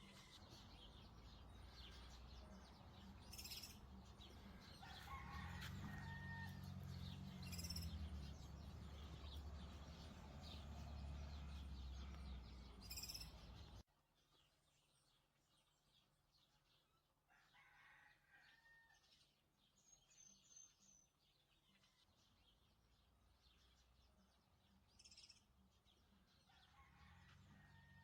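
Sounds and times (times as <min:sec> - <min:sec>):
faint birds chirping: 0:00.0 - 0:18.0.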